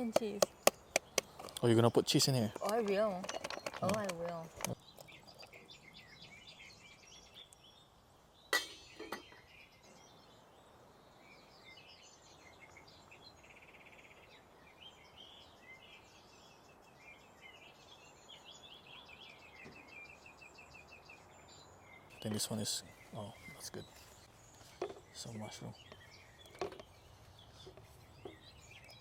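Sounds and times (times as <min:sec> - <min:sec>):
birds chirping: 0:00.0 - 0:29.0
sharp ringing clink: 0:08.6 - 0:09.3.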